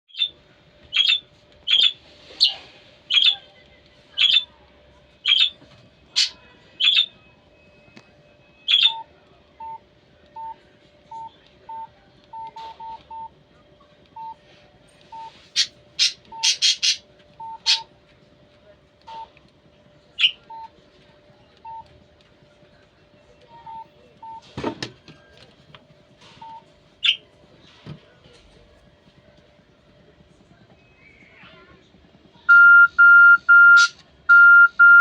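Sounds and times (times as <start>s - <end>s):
bird-like alarm chirp: 1.0s - 2.0s, 3.1s - 3.4s, 5.2s - 5.6s, 6.2s - 7.1s, 8.6s - 9.0s, 15.6s - 17.0s, 32.5s - 34.0s.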